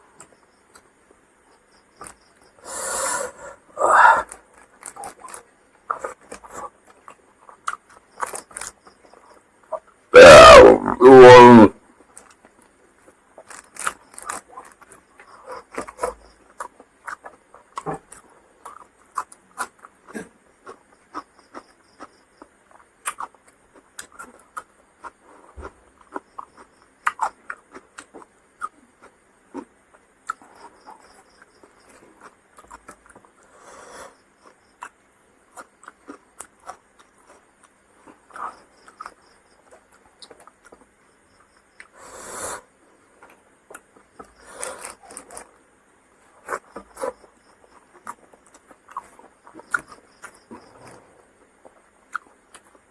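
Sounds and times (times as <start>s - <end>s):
breathy rush: 2.7s - 4.3s
person chewing with wet smacks: 4.2s - 9.9s, 12.1s - 33.5s, 34.4s - 41.9s, 43.2s - 52.9s.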